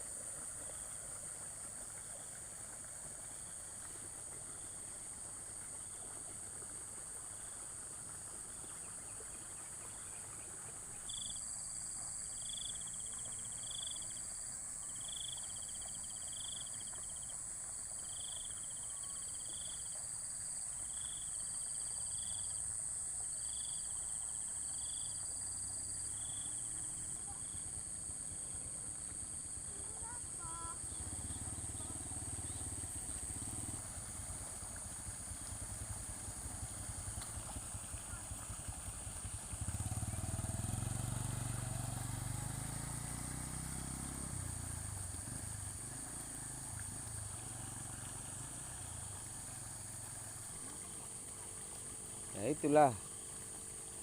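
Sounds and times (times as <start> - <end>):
insect chirps: 0.0 - 54.0
insects droning: 0.0 - 54.0
motorcycle engine running: 25.6 - 54.0.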